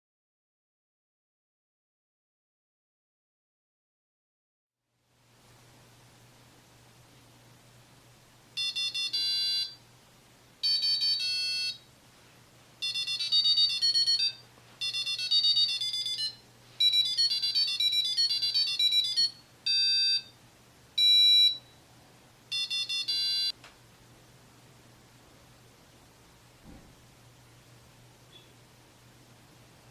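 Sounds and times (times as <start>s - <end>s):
alarm clock beeping melodies: 8.6s - 9.8s, 10.6s - 11.9s, 12.8s - 20.4s, 21.0s - 21.8s, 22.5s - 23.6s.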